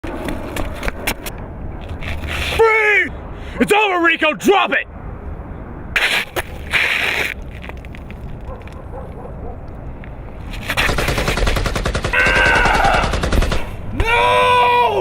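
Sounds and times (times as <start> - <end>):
person yelling: 2.5 - 4.8, 12.2 - 13.2, 14.0 - 15.0
rapid automatic gunfire: 10.8 - 13.8
long shout: 12.1 - 13.1, 14.0 - 15.0.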